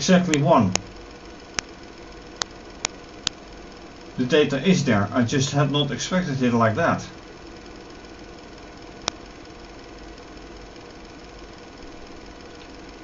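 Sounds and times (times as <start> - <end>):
faint machine hum: 0.0 - 13.0
sharp click: 0.3 - 0.9.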